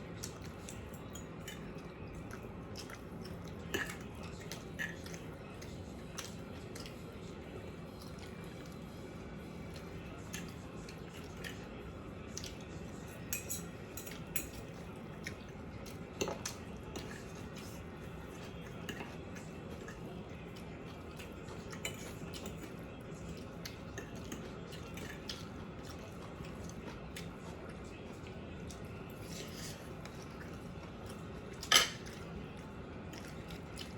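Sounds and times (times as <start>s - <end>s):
low room hum: 0.0s - 33.9s.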